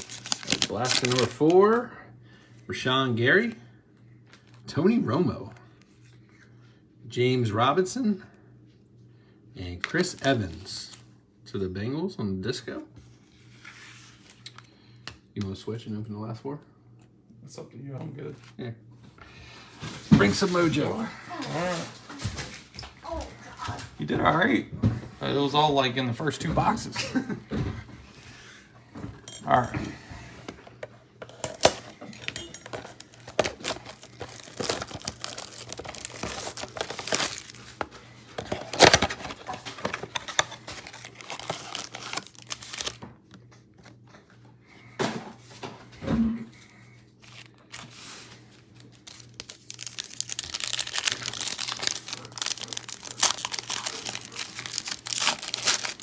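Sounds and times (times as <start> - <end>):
clicks and rustles of cards: 0.0 - 1.8, 30.5 - 44.3, 47.2 - 56.0
foil packs being torn open: 0.0 - 1.8, 9.9 - 11.0, 20.2 - 22.6, 31.2 - 43.0, 47.2 - 56.0
wrappers crinkling: 0.0 - 1.8, 20.2 - 22.8, 31.3 - 43.0, 47.2 - 56.0.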